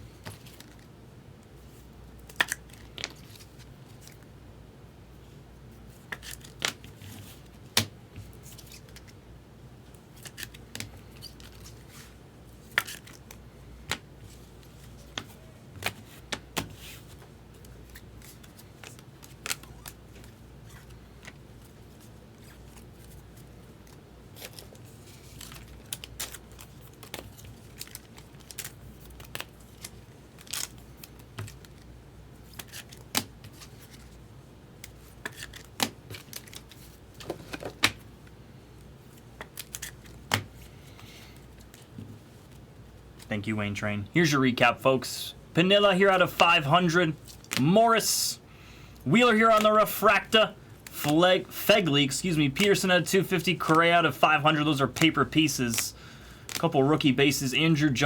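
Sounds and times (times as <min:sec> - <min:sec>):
low room hum: 0:00.0 - 0:58.0
cards sliding: 0:34.8 - 0:38.0
trading cards clicking and tapping: 0:52.5 - 0:55.9.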